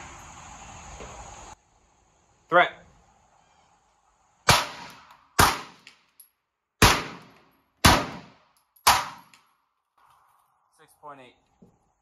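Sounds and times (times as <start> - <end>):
pistol shots echoing: 4.5 - 5.9, 6.8 - 9.4.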